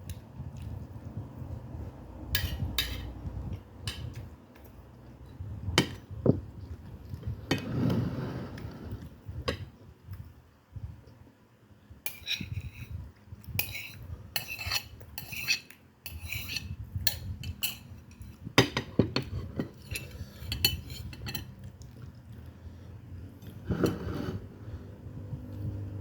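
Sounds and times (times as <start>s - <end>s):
cutlery clinking on a plate: 2.4s - 3.1s, 12.1s - 12.9s, 13.6s - 21.6s.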